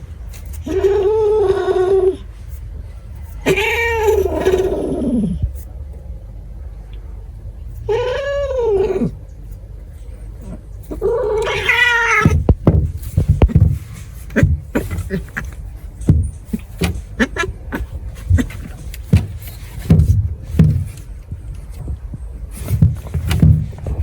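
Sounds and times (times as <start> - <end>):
cat yowling meow: 3.4 - 5.4, 7.9 - 9.2, 10.4 - 12.4, 17.2 - 18.7.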